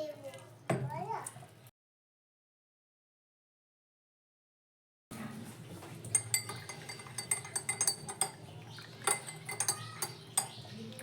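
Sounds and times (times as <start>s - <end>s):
metal spoon clinking against dish: 6.1s - 11.0s.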